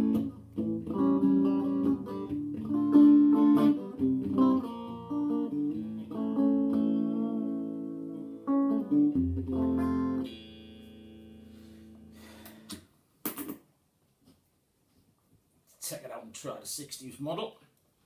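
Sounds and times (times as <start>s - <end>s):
clean electric guitar chords: 0.0s - 12.6s
guitar scrape: 10.7s - 12.7s.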